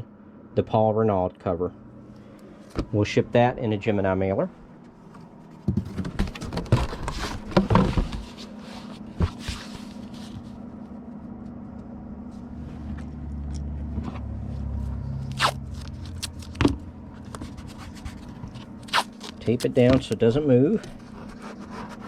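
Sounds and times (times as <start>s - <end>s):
steady low hum: 0.0s - 22.0s
plastic bag rustling and scraping: 5.9s - 10.6s.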